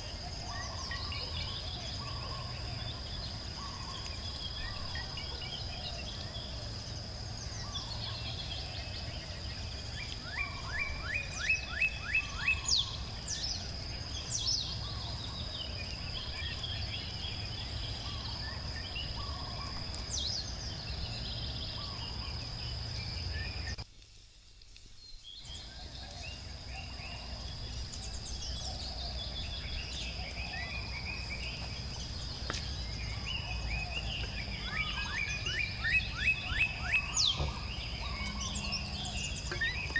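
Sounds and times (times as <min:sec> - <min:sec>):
birds chirping and calling: 0:00.0 - 0:06.6, 0:07.4 - 0:23.8, 0:25.4 - 0:39.9
high insect drone: 0:00.0 - 0:39.9
repeated bird notes: 0:32.9 - 0:39.9.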